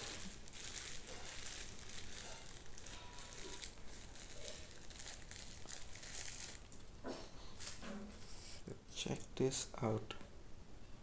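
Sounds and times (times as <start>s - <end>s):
packaging rustling and crinkling: 0.0s - 7.9s.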